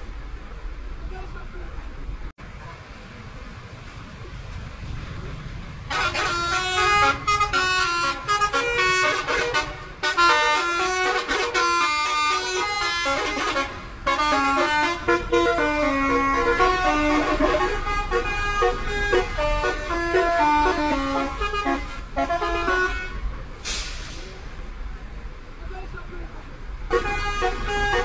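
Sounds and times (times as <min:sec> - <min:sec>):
air horn playing a tune: 0:05.9 - 0:23.9, 0:26.9 - 0:28.0.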